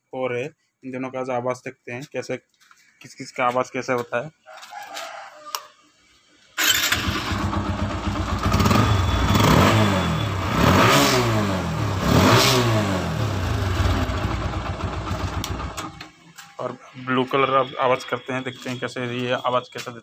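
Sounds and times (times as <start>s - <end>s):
motorcycle engine starting and revving: 6.6s - 16.1s.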